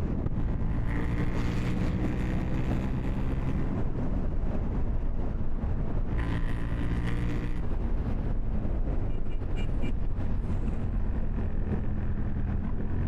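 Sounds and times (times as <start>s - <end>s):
motorcycle engine running: 0.0s - 3.8s, 6.2s - 7.7s
wind noise on microphone: 0.0s - 13.0s.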